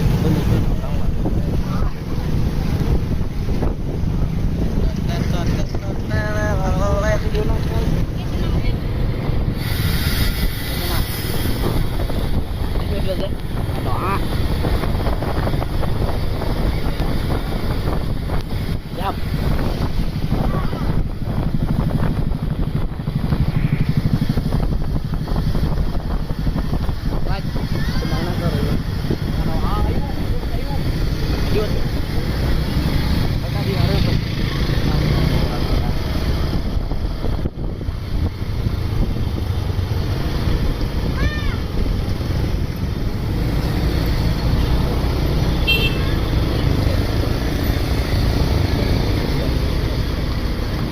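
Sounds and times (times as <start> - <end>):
heavy vehicle engine rumbling: 0.0 - 50.9
wind buffeting microphone: 0.0 - 50.9
buses passing close: 8.0 - 13.6.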